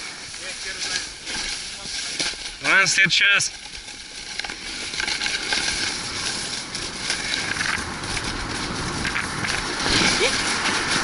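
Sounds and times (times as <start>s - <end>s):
small clicks and rattles: 0.3s - 11.0s
rushing noise of fast ride: 5.2s - 11.0s.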